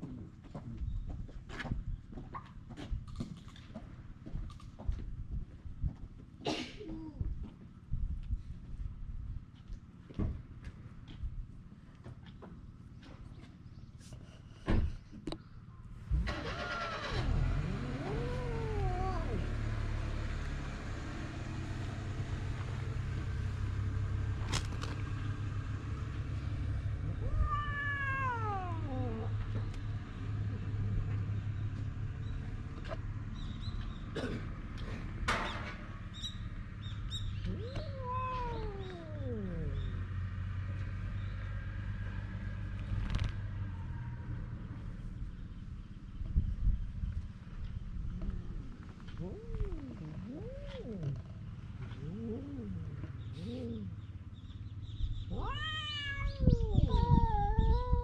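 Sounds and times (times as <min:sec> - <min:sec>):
cat meowing: 0:16.3 - 0:19.6, 0:26.9 - 0:29.4, 0:37.4 - 0:40.0, 0:55.2 - 0:58.0.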